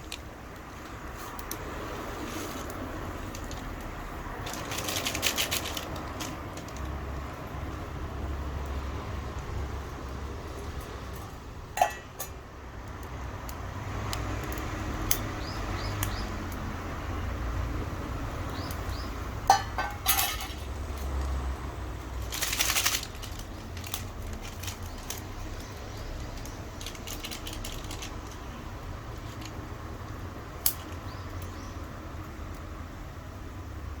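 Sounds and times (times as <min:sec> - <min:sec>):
small clicks and crackles: 0:00.0 - 0:09.6, 0:22.0 - 0:32.7.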